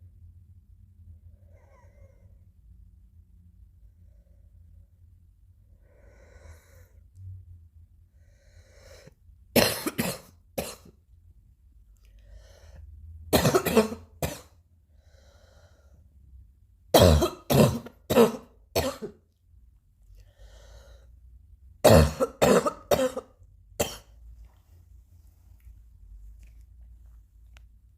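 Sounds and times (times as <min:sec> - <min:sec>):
person coughing: 0:09.6 - 0:11.0, 0:13.3 - 0:14.6, 0:17.0 - 0:19.2, 0:21.8 - 0:24.2.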